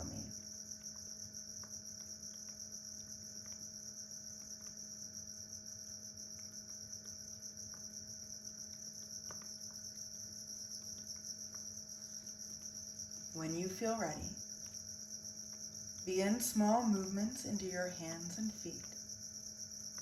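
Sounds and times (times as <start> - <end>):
crickets trilling: 0.0 - 20.0
faint low hum: 5.7 - 20.0.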